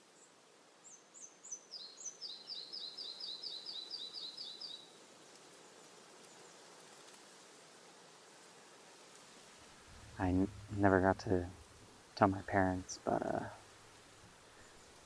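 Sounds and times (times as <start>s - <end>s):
faint outdoor hiss: 0.0s - 15.0s
songbird singing: 0.1s - 4.9s, 9.9s - 15.0s.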